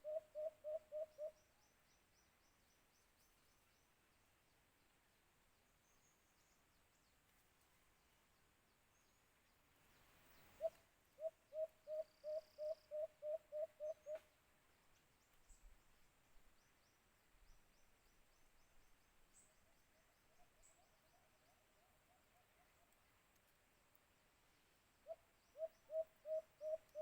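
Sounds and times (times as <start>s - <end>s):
dove cooing: 0.0s - 1.3s, 25.1s - 27.0s
distant dove cooing: 0.0s - 1.4s, 25.0s - 27.0s.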